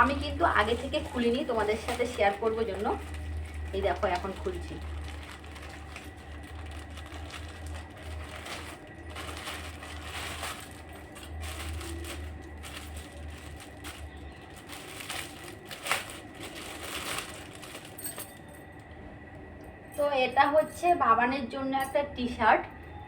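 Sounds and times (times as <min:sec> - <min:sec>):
low steady hum: 0:00.0 - 0:23.0
plastic packet tearing and crinkling: 0:00.2 - 0:18.2.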